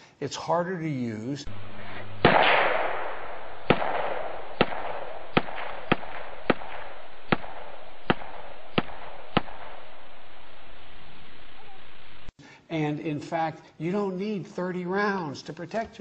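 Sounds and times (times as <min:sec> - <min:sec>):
steady hiss: 0:01.3 - 0:12.7
gunshots with echo: 0:01.5 - 0:10.0.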